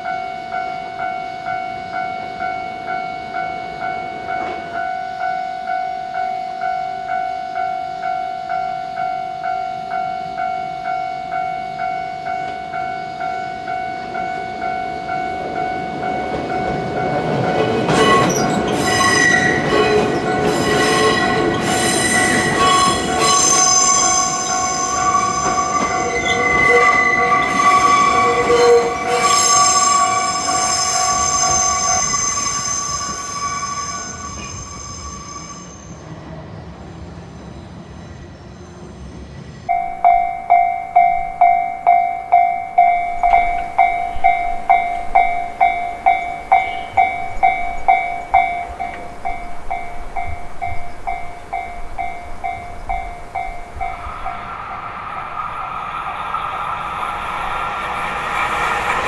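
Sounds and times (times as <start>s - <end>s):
crossing warning bell ringing: 0.0s - 36.1s, 39.7s - 59.0s
level crossing alarm: 0.1s - 36.0s, 39.7s - 55.5s
train wheels squealing: 12.8s - 59.0s.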